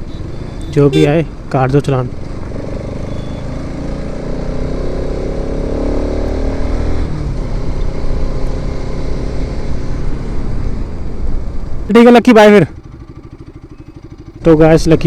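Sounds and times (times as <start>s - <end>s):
motorcycle engine running: 0.0s - 1.4s, 9.0s - 15.0s
rushing road noise: 0.0s - 15.0s.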